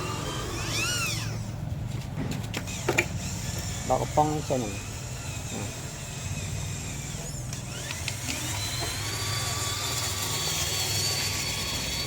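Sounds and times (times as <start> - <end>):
small electric motor whining: 0.0 - 1.7, 2.5 - 12.0.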